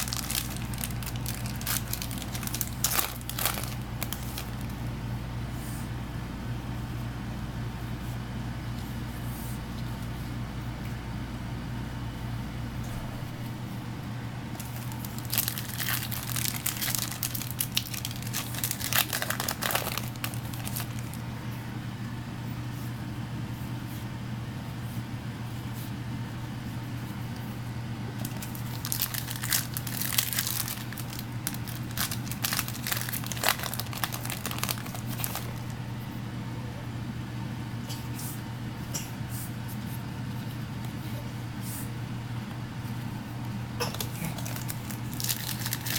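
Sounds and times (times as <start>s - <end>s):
foil wrappers crinkling and tearing: 0.0s - 4.8s, 14.5s - 21.2s, 28.2s - 35.8s, 43.9s - 45.9s
steady low hum: 0.0s - 45.9s.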